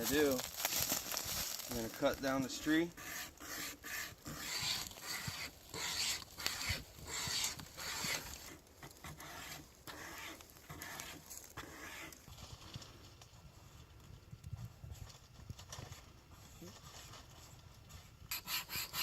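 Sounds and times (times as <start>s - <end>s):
wire saw rasping through wood: 2.5s - 12.2s, 18.3s - 19.0s.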